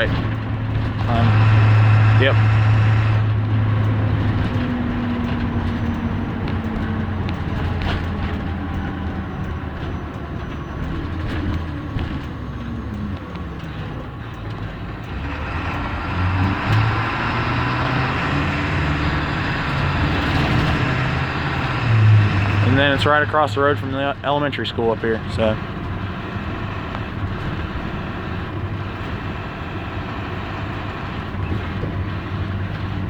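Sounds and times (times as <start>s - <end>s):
bus engine hum: 0.0s - 33.0s
road noise: 0.0s - 33.0s.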